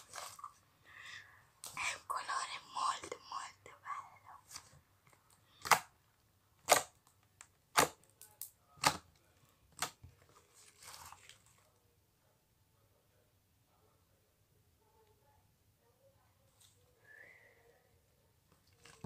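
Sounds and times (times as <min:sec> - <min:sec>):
slime squishing: 0:04.5 - 0:06.0, 0:07.7 - 0:11.7.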